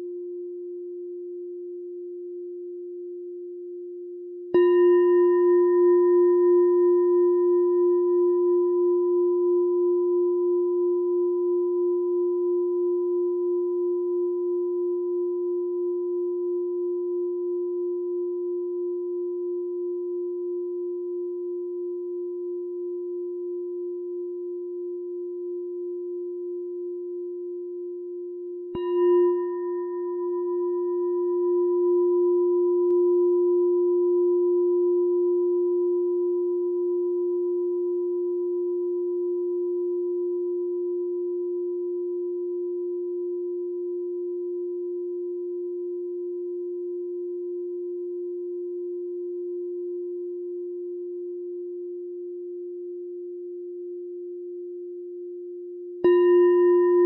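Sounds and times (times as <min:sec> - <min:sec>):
meditation bell ringing: 0:04.5 - 0:12.8, 0:28.4 - 0:47.7, 0:56.0 - 0:57.0.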